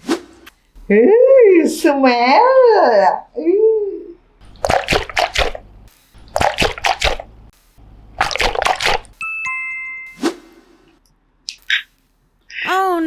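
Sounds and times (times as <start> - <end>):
splashy water-like crackling: 4.5 - 7.3, 8.2 - 9.2
descending ding-dong chime: 9.2 - 10.2.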